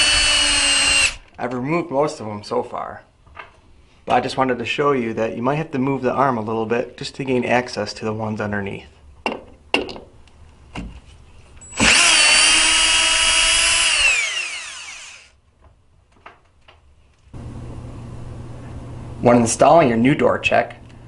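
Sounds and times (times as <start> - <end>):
screwdriver motor whine: 0.0 - 1.4, 11.6 - 15.3.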